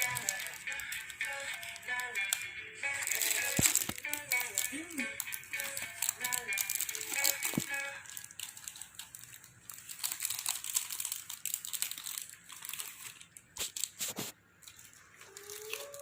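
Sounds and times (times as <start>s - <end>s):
packaging crinkling and rustling: 0.0s - 2.4s, 3.0s - 16.0s.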